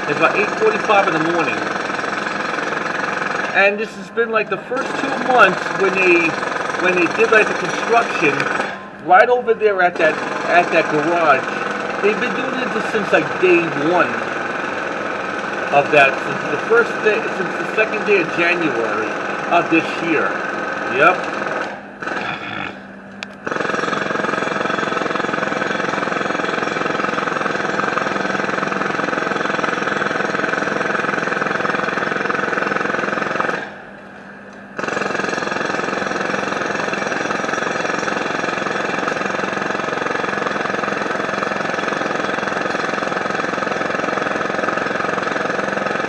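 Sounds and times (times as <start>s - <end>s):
heavy construction machinery: 0.0s - 46.0s.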